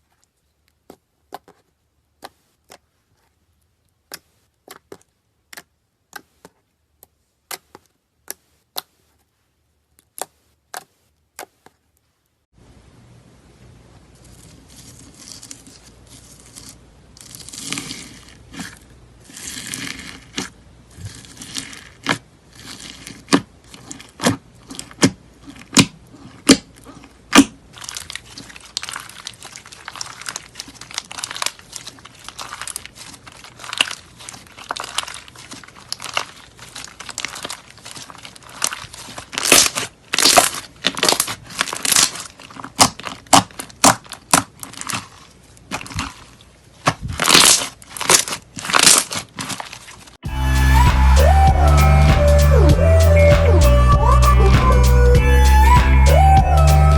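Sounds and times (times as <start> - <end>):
slime crinkling and crunching: 14.2 - 50.3.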